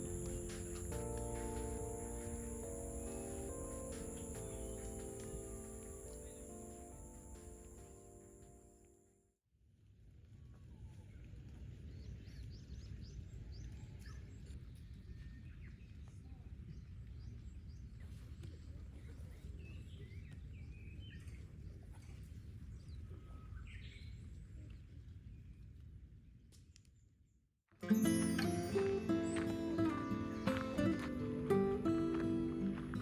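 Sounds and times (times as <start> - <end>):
steady low rumble: 0.0 - 7.8
birds chirping: 0.0 - 8.6, 28.0 - 33.0.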